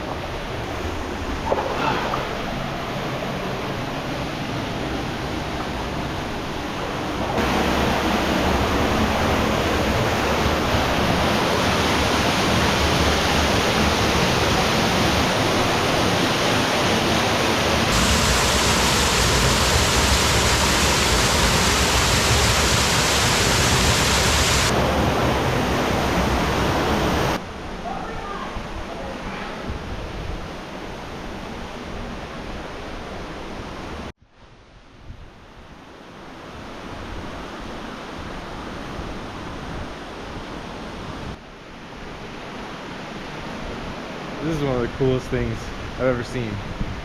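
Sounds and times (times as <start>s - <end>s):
water rushing through canyon: 0.2s - 27.4s.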